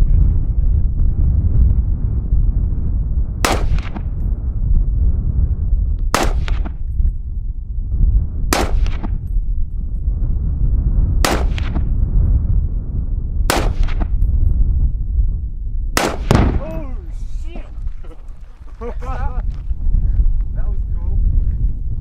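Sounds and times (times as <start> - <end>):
wind buffeting microphone: 0.0 - 22.0
rifle shots with echo: 3.4 - 4.2, 6.1 - 6.8, 8.5 - 9.2, 11.2 - 11.9, 13.5 - 14.2, 16.0 - 16.9.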